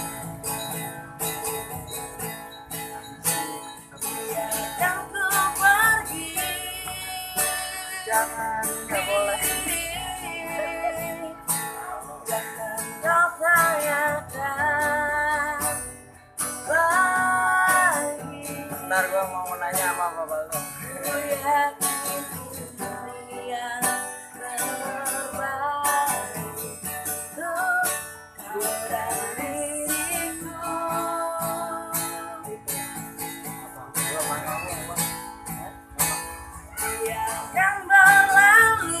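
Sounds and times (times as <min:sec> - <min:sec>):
strummed acoustic guitar: 0:00.0 - 0:39.0
woman singing pop ballad: 0:04.1 - 0:19.2, 0:21.0 - 0:33.0, 0:36.8 - 0:39.0.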